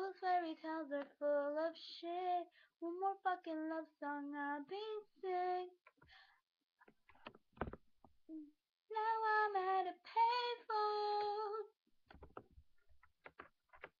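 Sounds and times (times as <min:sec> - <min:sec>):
girl singing unaccompanied: 0:00.0 - 0:05.8, 0:08.3 - 0:11.8.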